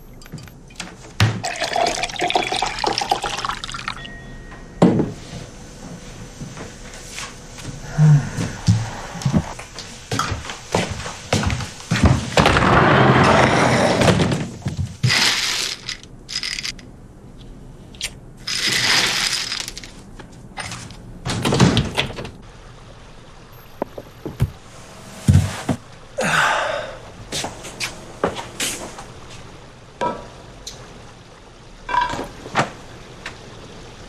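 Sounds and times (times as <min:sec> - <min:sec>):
rustling noise: 0:23.9 - 0:25.9.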